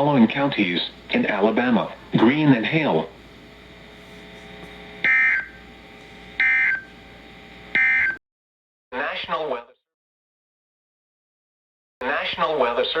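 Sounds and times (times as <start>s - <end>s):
faint receiver hiss: 0.0s - 8.1s
screechy data bursts: 3.4s - 8.2s.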